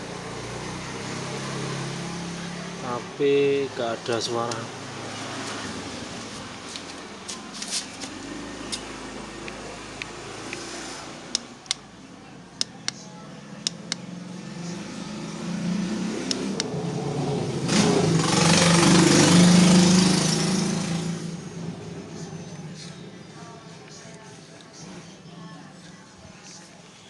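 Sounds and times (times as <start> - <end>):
motor vehicle passing: 0.0 - 12.1, 12.7 - 25.7
sharp clicks: 16.3 - 16.7.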